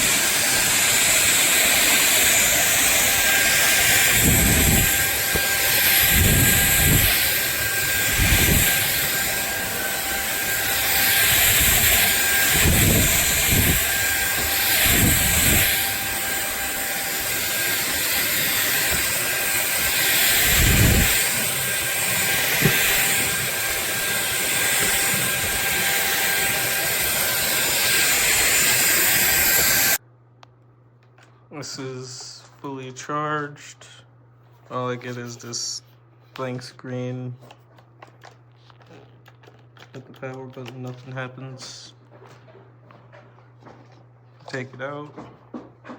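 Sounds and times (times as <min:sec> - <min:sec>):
stick vacuum motor whine: 0:00.0 - 0:30.0
vacuum thumping on floor: 0:22.3 - 0:23.2.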